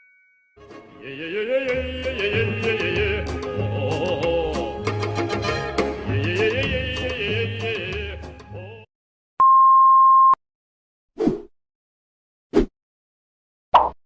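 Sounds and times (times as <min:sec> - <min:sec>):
music with singing: 0:00.6 - 0:08.9
censor bleep: 0:09.4 - 0:10.4.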